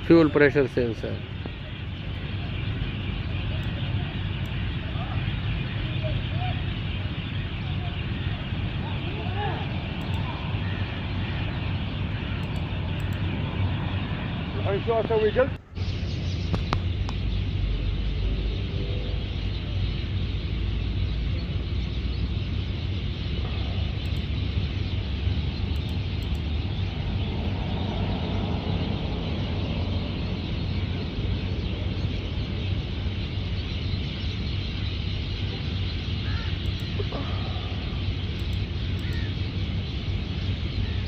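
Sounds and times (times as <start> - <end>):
low hum: 1.1 - 41.0.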